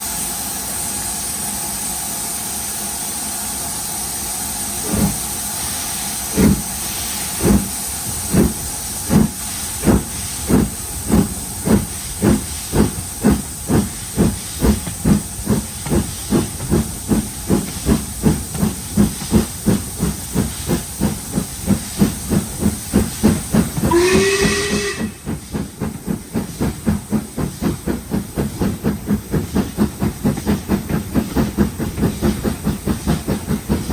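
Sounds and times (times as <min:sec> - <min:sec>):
steam hissing: 0:00.0 - 0:33.9
steam locomotive exhaust beats: 0:00.0 - 0:33.9
steam locomotive whistle: 0:23.8 - 0:25.3.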